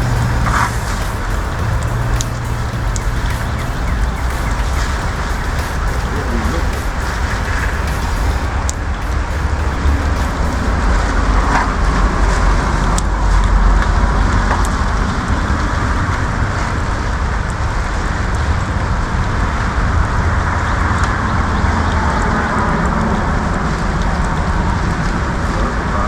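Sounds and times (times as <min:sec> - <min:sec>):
sharp ticks: 0:00.0 - 0:10.8.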